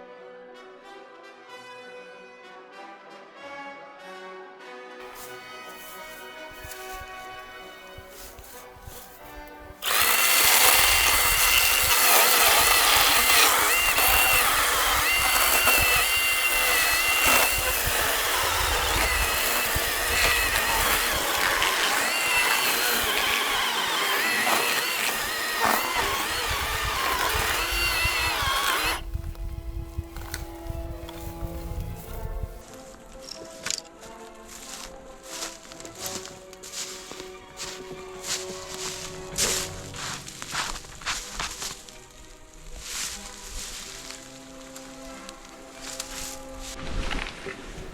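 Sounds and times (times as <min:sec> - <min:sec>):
cordless chainsaw whining: 0:05.1 - 0:29.2.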